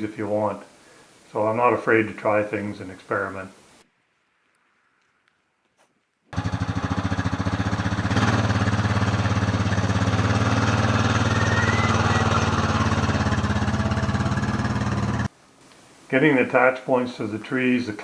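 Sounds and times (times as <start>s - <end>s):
engine running with pulsing beat: 6.4s - 15.3s.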